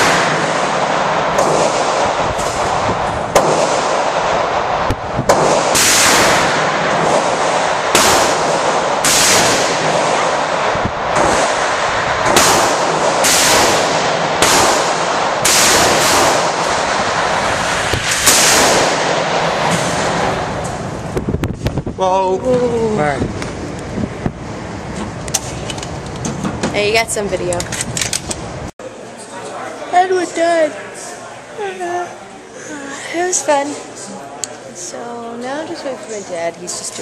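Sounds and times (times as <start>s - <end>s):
gunshots echoing: 0.0s - 21.1s.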